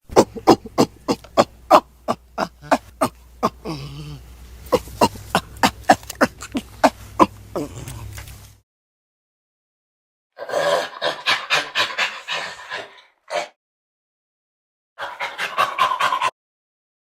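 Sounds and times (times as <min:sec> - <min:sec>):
chimpanzee low drawn-out call: 0:00.1 - 0:08.2.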